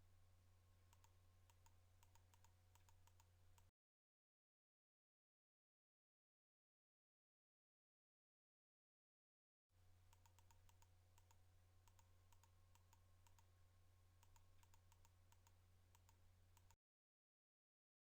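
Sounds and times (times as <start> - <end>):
faint electrical hum: 0.0 - 3.7, 9.7 - 16.8
soft irregular clicks: 0.8 - 3.7, 9.8 - 16.8.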